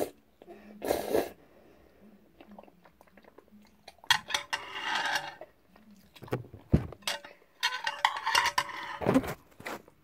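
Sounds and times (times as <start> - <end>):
utensils clinking and scraping bowl: 3.7 - 9.4.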